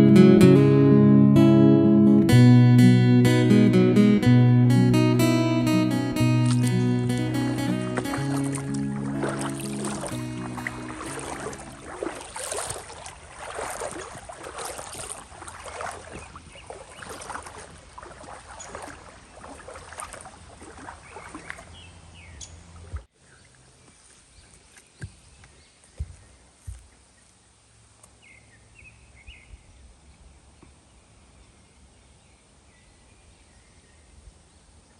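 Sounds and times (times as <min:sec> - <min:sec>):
crackling rustle through brush: 0:06.5 - 0:22.0.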